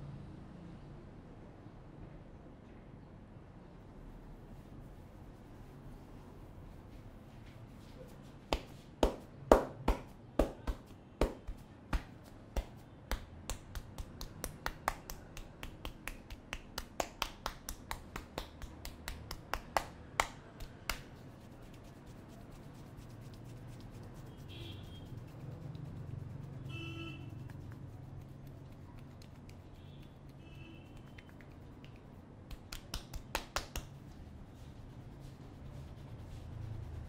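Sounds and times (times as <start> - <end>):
hands snapping during head massage: 8.5 - 24.0, 27.4 - 34.0.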